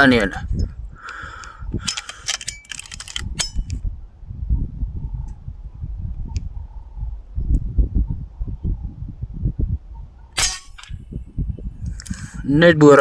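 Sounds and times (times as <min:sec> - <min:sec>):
wind rumbling on microphone: 0:00.0 - 0:13.0
air rifle clicks and ticks: 0:01.0 - 0:03.8.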